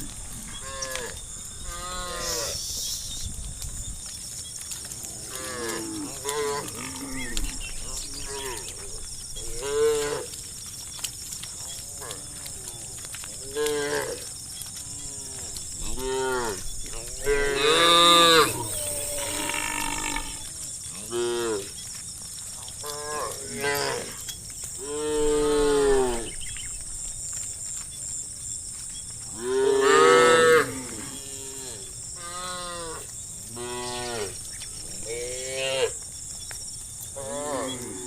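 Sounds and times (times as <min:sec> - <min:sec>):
cows mooing: 0:00.0 - 0:02.6, 0:14.9 - 0:21.7, 0:29.4 - 0:33.0.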